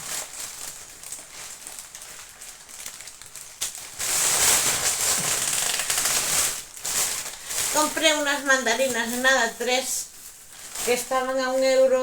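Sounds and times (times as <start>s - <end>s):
plastic bag rustling and crinkling: 0.0s - 12.0s.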